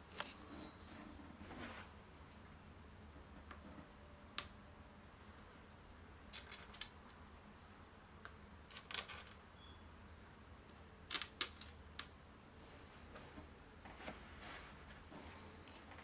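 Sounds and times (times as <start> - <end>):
small hard parts clicking: 6.3 - 7.2, 8.7 - 9.4, 11.1 - 12.1.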